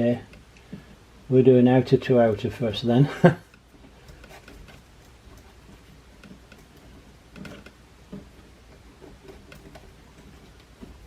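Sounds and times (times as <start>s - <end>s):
wire clicking and tapping: 3.5s - 11.0s.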